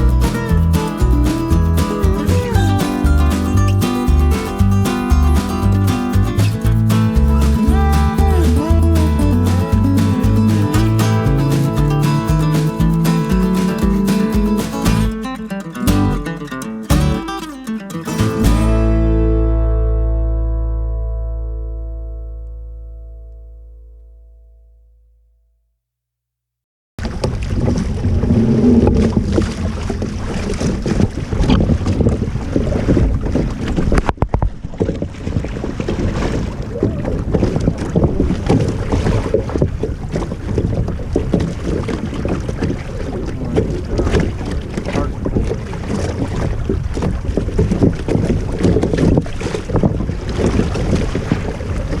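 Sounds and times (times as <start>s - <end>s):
wind buffeting microphone: 0.0s - 15.3s, 27.2s - 52.0s
water splashing along hull: 0.0s - 18.7s, 27.0s - 52.0s.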